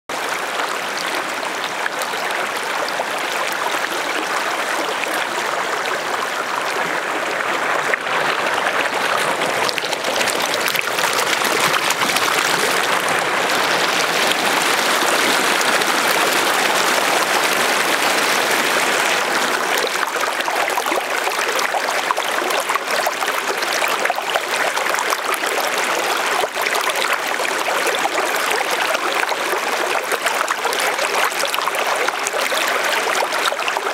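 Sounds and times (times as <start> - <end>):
lake water trickling: 7.1 - 33.9
small water splashes: 7.9 - 22.5.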